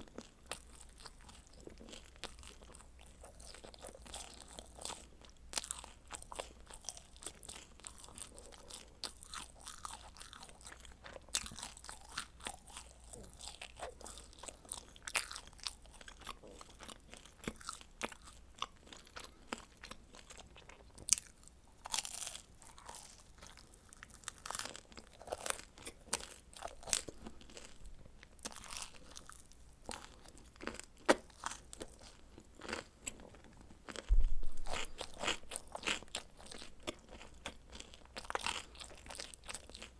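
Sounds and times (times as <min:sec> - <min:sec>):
crunchy chewing: 0:00.0 - 0:39.9
low thump: 0:34.1 - 0:34.8.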